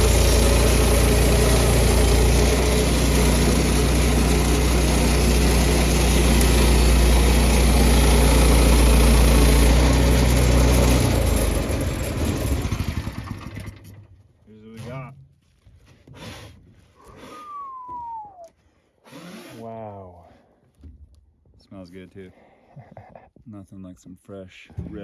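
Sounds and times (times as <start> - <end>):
sawmill engine running: 0.0 - 14.1.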